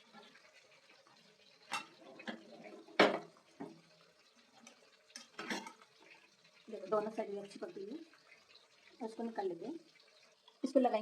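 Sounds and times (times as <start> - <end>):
utensils clinking on a griddle: 1.7 - 2.0, 5.2 - 5.8.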